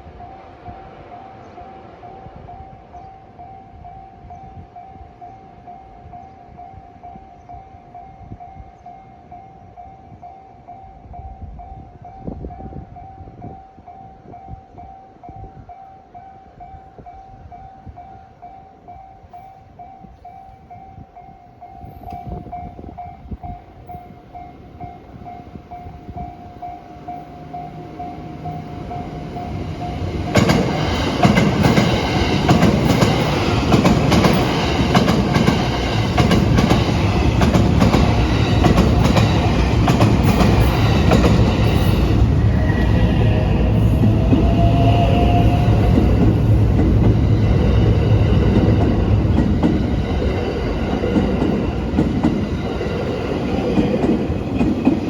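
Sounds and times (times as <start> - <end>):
train rumble: 16.4 - 55.0
train wheels clattering on rails: 27.9 - 55.0.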